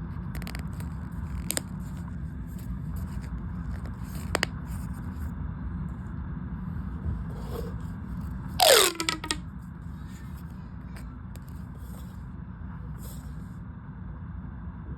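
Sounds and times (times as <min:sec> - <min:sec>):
plastic pop tubes rustling: 0:00.3 - 0:05.0, 0:08.6 - 0:09.4
pop tube rapid popping clicks: 0:08.6 - 0:09.4
squeaky falling tone: 0:08.6 - 0:09.4.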